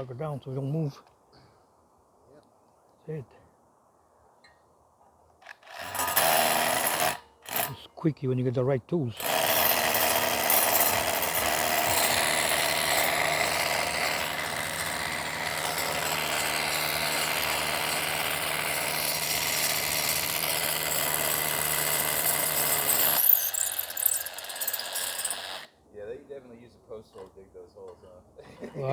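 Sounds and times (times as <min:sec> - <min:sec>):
hammer drill boring into concrete: 0:05.5 - 0:07.8, 0:09.2 - 0:25.7.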